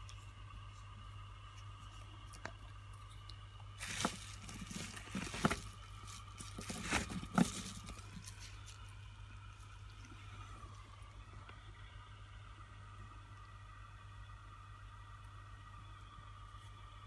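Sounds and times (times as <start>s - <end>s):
steady low hum: 0.0s - 17.0s
rustling: 3.8s - 9.0s.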